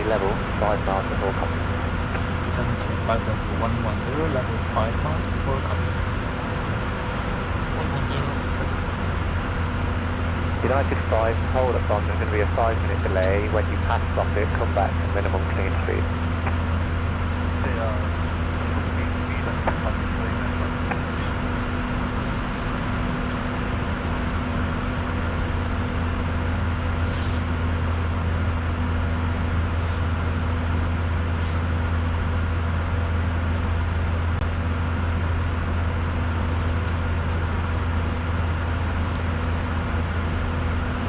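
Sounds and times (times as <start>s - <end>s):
cockpit low hum: 0.0s - 41.0s.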